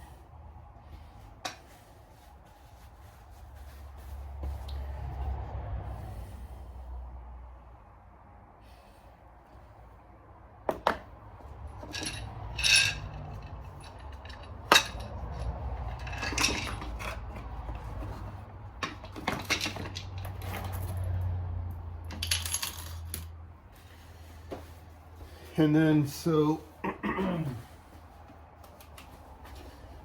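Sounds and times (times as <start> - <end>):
metal engine parts clinking: 11.6 - 21.1, 22.0 - 23.3.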